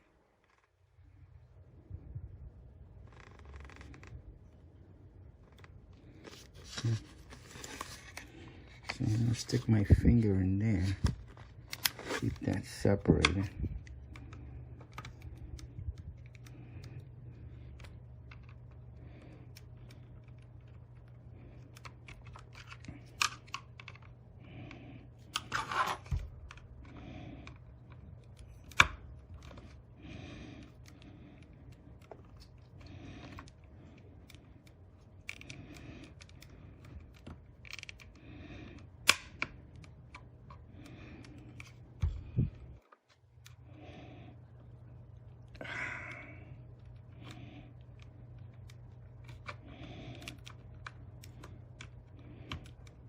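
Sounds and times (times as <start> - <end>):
low steady hum: 0.0 - 53.0
plastic clips clicking and snapping: 34.2 - 40.6.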